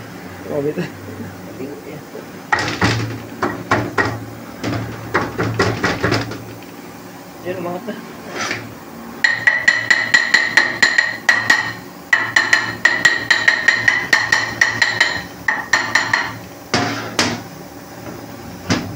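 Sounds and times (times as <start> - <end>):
metal-on-metal hammering: 2.5 - 6.4, 9.2 - 17.4.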